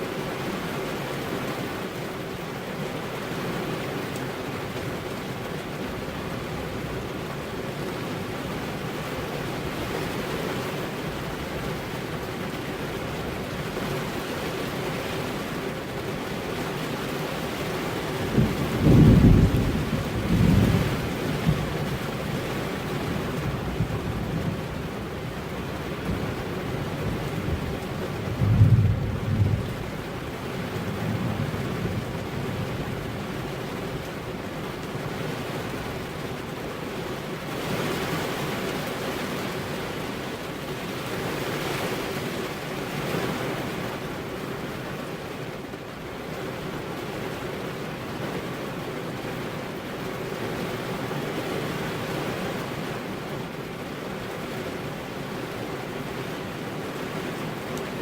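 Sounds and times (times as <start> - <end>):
rain pattering on car windows: 0.0 - 58.0
thunder rumbling: 18.1 - 33.4.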